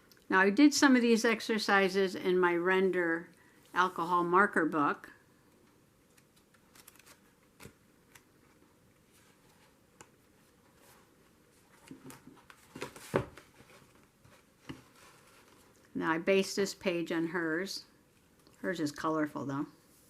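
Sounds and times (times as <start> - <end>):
paper pages rustling: 6.1 - 9.8, 10.4 - 15.8.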